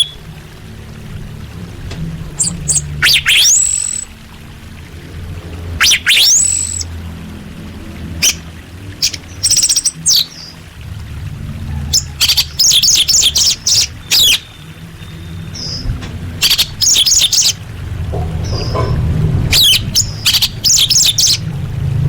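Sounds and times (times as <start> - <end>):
bird chirping and trilling: 0.0 - 0.2, 2.4 - 4.2, 5.8 - 7.0, 8.2 - 10.6, 11.8 - 17.6, 18.4 - 21.5
low steady hum: 0.0 - 22.0.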